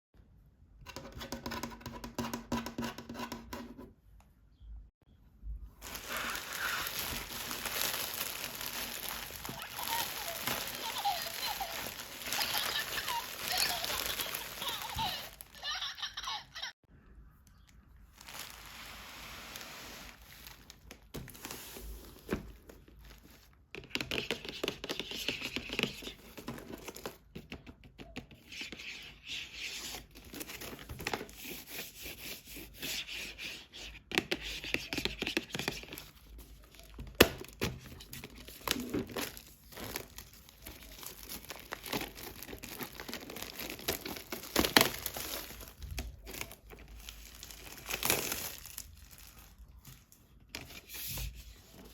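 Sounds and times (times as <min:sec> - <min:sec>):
packaging crinkling and tearing: 0:05.8 - 0:15.8, 0:18.1 - 0:21.6, 0:35.7 - 0:50.4.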